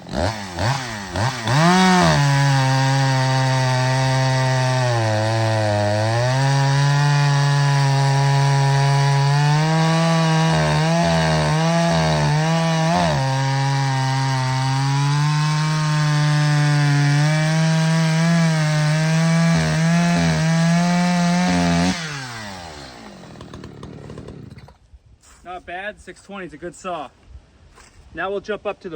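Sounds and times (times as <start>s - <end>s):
chainsaw cutting wood: 0.0s - 24.8s.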